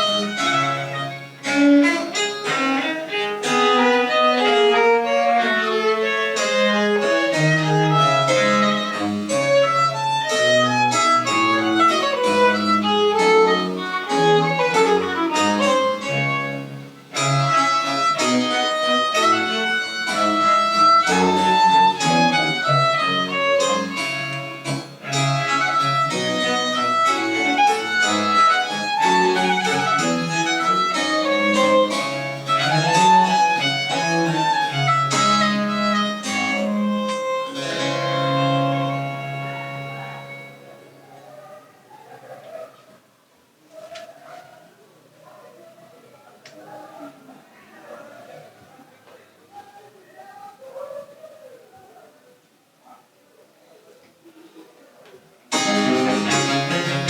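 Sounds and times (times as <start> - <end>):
violin leading: 0.0 - 41.0, 55.5 - 57.0
bowed strings: 0.0 - 41.1, 55.5 - 57.0.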